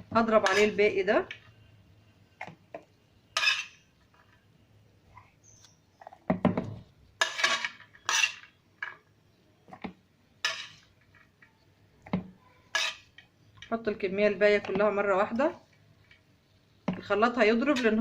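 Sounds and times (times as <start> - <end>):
utensils and dishes clattering: 3.4 - 3.8, 7.2 - 9.0, 12.6 - 13.2.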